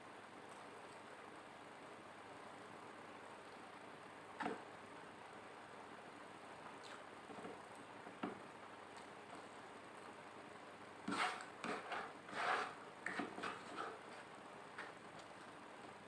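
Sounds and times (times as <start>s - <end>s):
chewing and mouth noises: 6.8s - 7.9s.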